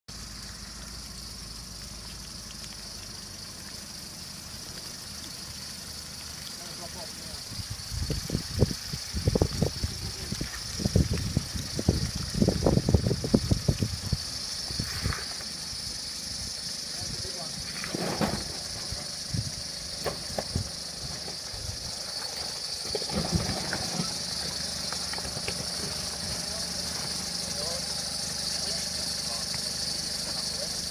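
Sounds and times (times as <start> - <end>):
engine idling: 0.1 - 30.9
high-pitched hiss: 0.1 - 30.9
faint ticks: 0.7 - 3.9
knocks and thumps: 20.0 - 21.4.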